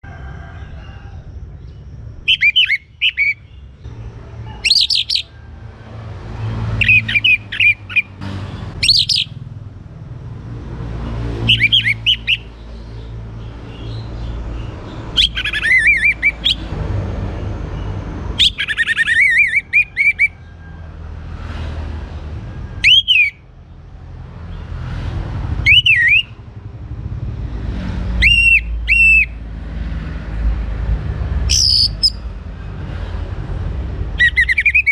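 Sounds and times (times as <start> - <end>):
thrush singing whistles and trills: 1.6 - 3.8, 4.6 - 5.4, 6.8 - 8.2, 8.8 - 9.4, 11.4 - 16.7, 18.4 - 20.6, 22.7 - 23.5, 25.6 - 26.4, 28.2 - 29.4, 31.5 - 32.2, 34.2 - 34.9.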